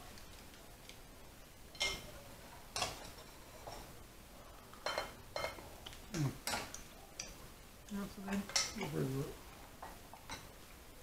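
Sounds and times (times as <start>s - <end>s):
cutlery and plates clinking: 1.7s - 2.1s, 2.7s - 4.0s, 4.8s - 5.7s, 6.4s - 7.4s, 8.3s - 9.0s.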